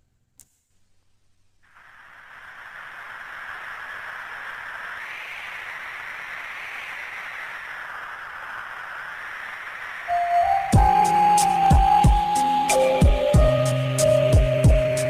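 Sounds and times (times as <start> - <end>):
steady wind-like hiss: 0.7 - 15.0.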